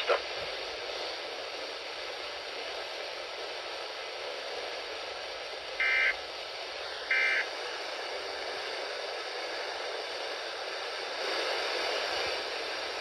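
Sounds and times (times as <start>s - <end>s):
radio hiss: 0.0s - 13.0s
two-tone digital data bursts: 5.8s - 6.2s, 7.1s - 7.5s.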